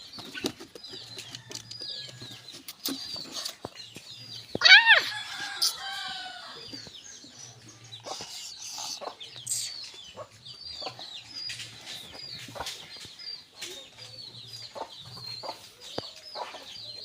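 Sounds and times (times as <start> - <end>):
rooster crowing: 4.6 - 6.7.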